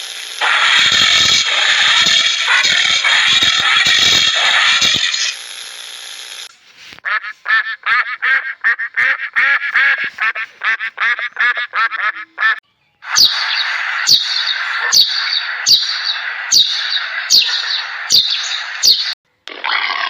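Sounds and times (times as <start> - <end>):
loud even noise: 0.0 - 5.4
duck quacking rapidly: 7.0 - 13.8.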